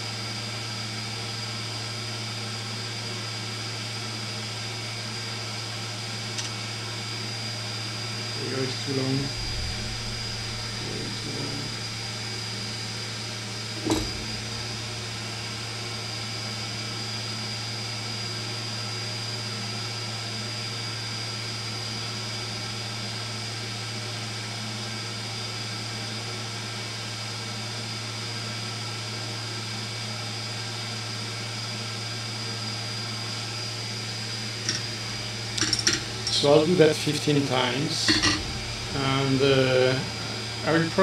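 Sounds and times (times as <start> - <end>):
electric fan humming: 5.6 - 16.8, 21.8 - 25.3, 33.2 - 41.0.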